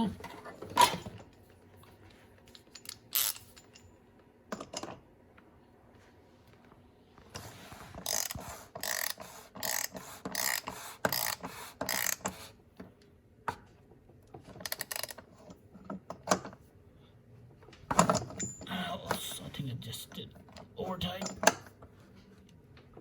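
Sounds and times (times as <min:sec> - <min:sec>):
ratchet wrench clicking: 0:02.8 - 0:03.5, 0:08.1 - 0:12.2.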